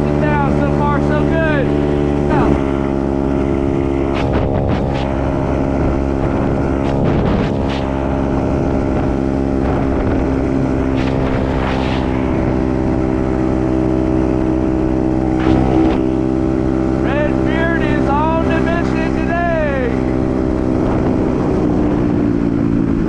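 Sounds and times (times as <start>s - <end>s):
dirt bike engine running: 0.0s - 23.0s.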